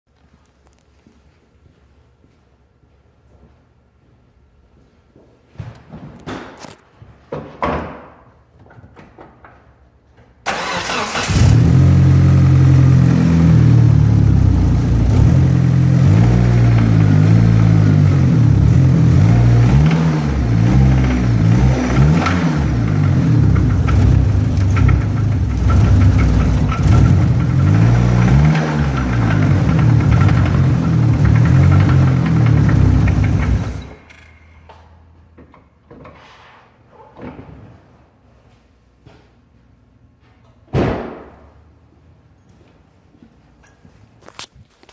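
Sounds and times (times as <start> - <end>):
car engine idling: 10.5 - 19.7, 20.3 - 34.0
car engine cranking: 10.5 - 34.4.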